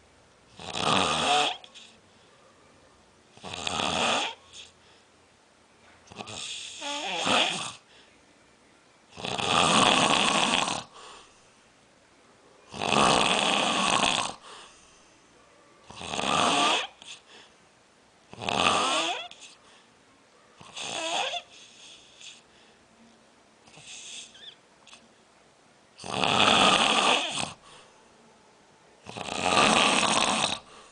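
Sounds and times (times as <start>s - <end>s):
person snoring: 0.6s - 1.9s, 3.4s - 4.7s, 6.1s - 7.8s, 9.2s - 11.0s, 12.7s - 14.4s, 15.9s - 17.2s, 18.3s - 19.6s, 20.7s - 22.4s, 26.0s - 27.6s, 29.0s - 30.7s.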